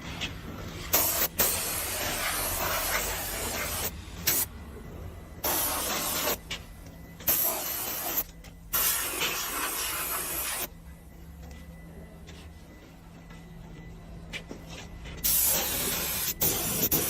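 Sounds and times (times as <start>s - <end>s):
spray can hissing bursts: 0.9s - 4.5s, 7.3s - 10.7s, 15.2s - 17.0s.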